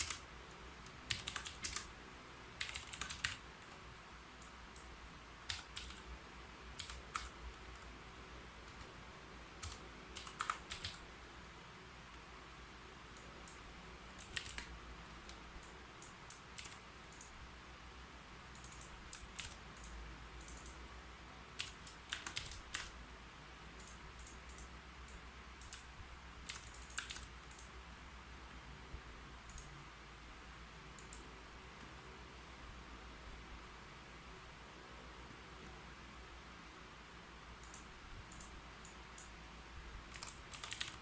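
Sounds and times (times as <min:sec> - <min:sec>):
keyboard typing: 0:00.0 - 0:02.0, 0:02.6 - 0:08.0, 0:08.6 - 0:11.1, 0:13.1 - 0:17.4, 0:18.5 - 0:20.9, 0:21.5 - 0:23.0, 0:23.8 - 0:27.8, 0:29.5 - 0:29.8, 0:37.6 - 0:39.4, 0:40.1 - 0:41.0.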